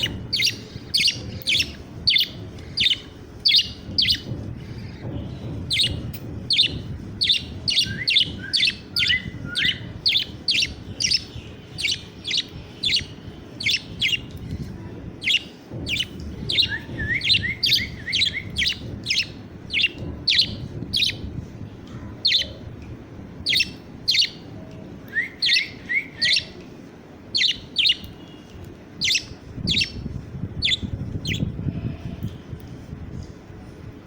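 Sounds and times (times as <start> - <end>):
budgerigar chick chirping: 29.0 - 30.0.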